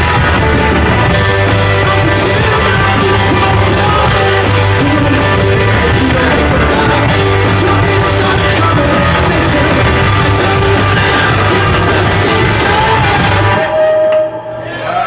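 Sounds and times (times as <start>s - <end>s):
rock band playing live: 0.0s - 14.7s
person singing: 1.7s - 14.2s.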